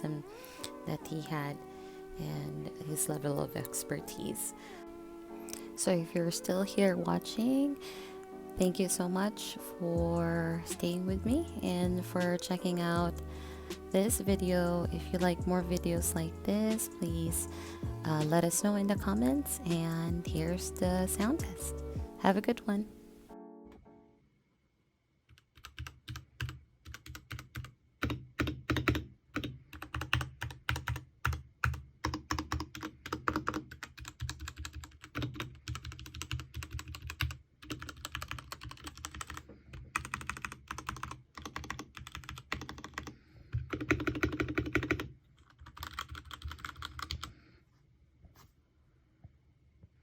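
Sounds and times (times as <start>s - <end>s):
mechanical keyboard typing: 25.3s - 47.3s.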